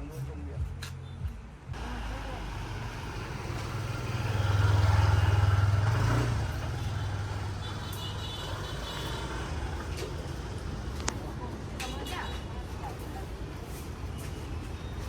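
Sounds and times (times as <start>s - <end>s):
vehicle engine passing: 1.7s - 11.3s.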